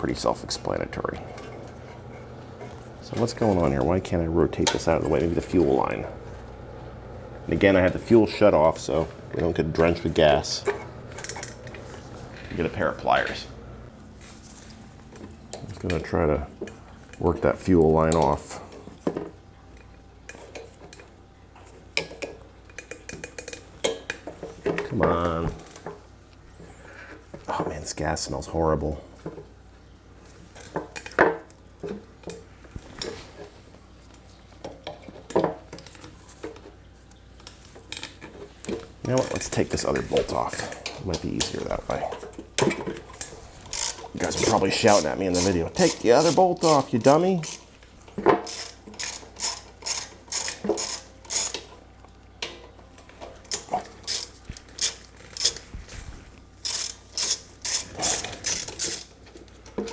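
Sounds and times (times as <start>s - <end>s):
pliers and metal parts clinking: 48.4s - 51.6s, 56.6s - 59.1s
socket ratchet clicking: 48.4s - 51.6s, 56.6s - 59.1s.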